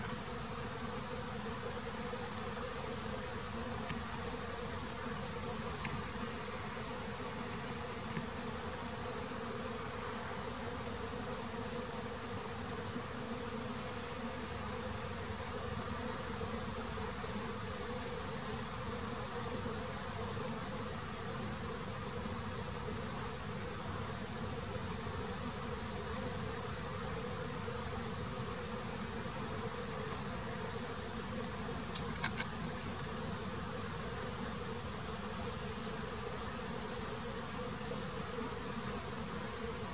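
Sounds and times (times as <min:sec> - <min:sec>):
honeybees buzzing: 0:00.0 - 0:39.9
sharp clicks: 0:31.9 - 0:32.5.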